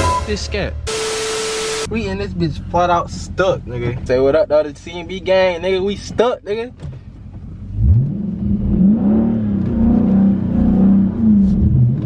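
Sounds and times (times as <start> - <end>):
car engine revving: 7.3 - 12.0.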